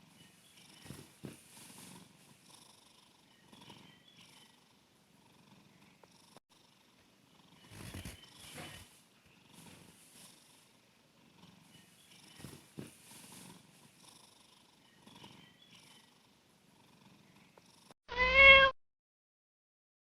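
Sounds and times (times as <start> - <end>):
cat snoring softly: 0.2 - 18.0
cat meowing: 18.1 - 18.8.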